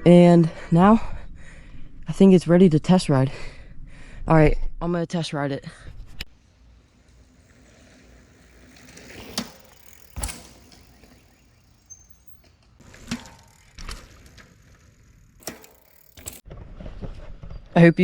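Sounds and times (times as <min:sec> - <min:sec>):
bike tyres rolling on dirt: 0:06.3 - 0:18.0.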